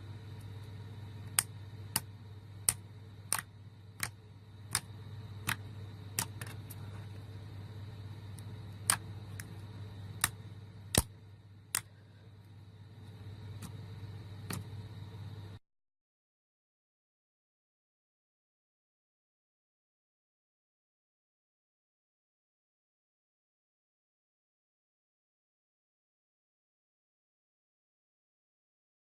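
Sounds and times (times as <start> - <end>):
steady low hum: 0.0 - 15.6.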